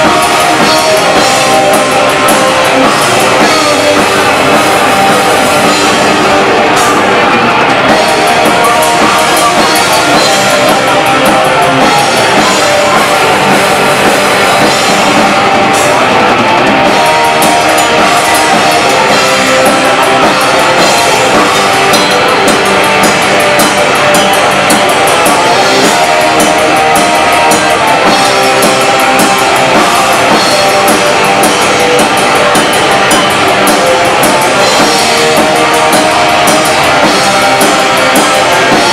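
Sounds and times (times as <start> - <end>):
distorted electric guitars: 0.0 - 38.9
drum kit: 0.0 - 38.9
cymbals ringing: 16.8 - 38.9.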